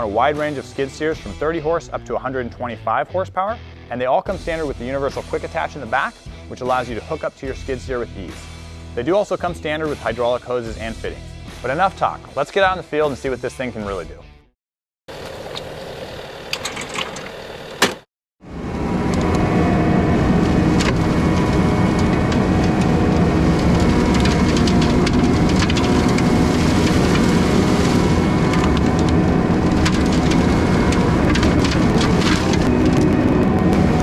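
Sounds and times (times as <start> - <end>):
flail mower machine running: 15.1 - 34.0
wood splintering cracks: 22.0 - 33.2.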